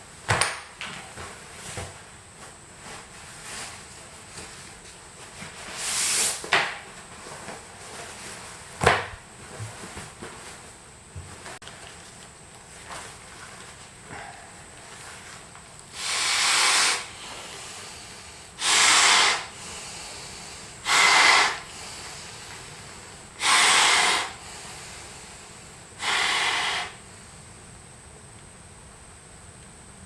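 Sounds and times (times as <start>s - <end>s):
person breathing heavily: 14.0s - 14.7s, 15.9s - 27.4s.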